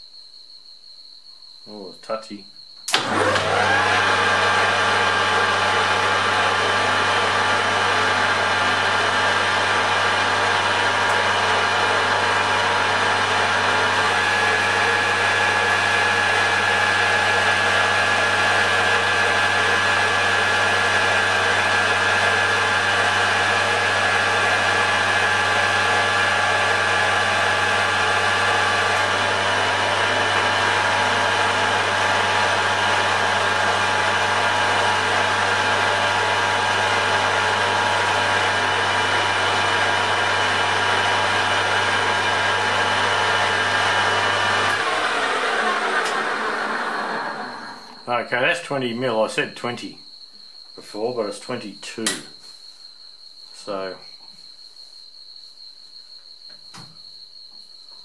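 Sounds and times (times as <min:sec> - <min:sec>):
metal lathe running: 0:02.9 - 0:48.1.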